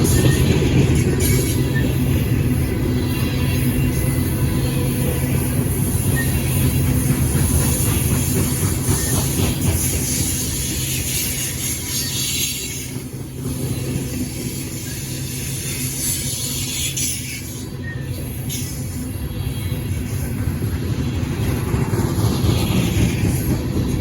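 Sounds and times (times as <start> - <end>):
train rumbling on track: 0.0 - 24.0
wheels clicking over rail joints: 0.0 - 24.0.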